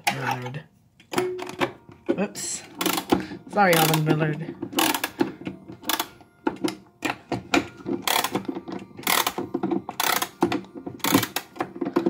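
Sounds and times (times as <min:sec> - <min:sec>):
clock winding ratchet clicks: 0:04.8 - 0:05.1, 0:05.8 - 0:06.1, 0:08.1 - 0:08.4, 0:09.0 - 0:09.4, 0:10.0 - 0:10.4.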